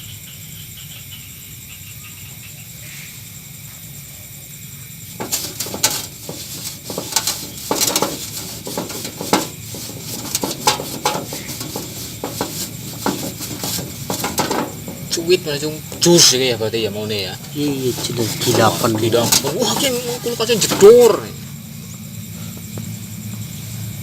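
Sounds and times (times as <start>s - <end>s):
metal tools clinking and scraping: 5.1s - 16.5s, 17.4s - 21.3s.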